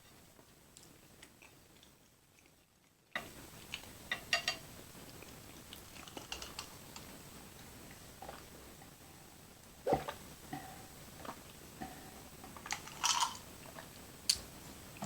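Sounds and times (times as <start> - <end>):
person chewing with wet smacks: 0.7 - 4.0.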